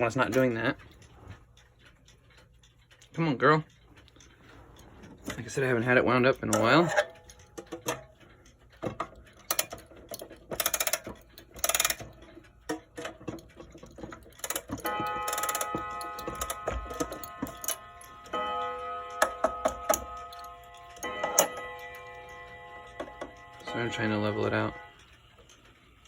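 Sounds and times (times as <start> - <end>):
clock mechanism clicks and rasps: 0.0 - 26.0
clock chimes ringing: 5.2 - 7.6, 14.4 - 25.2.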